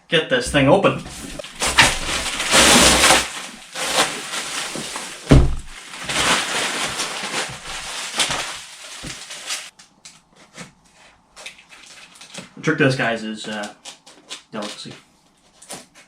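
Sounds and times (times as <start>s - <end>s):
packaging ripping and rustling: 1.1s - 9.8s, 11.3s - 12.6s, 13.4s - 16.0s
heavy thump: 5.3s - 5.8s.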